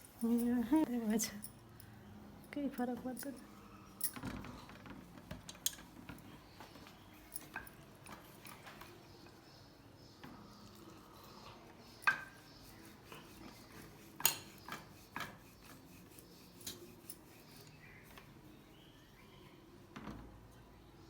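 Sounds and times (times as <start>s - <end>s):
dishes and utensils clinking: 12.0s - 17.7s.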